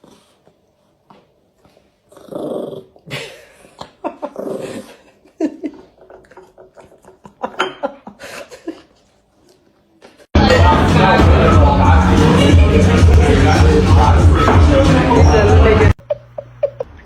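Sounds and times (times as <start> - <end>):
dog growling: 2.1 - 3.1, 4.1 - 5.2.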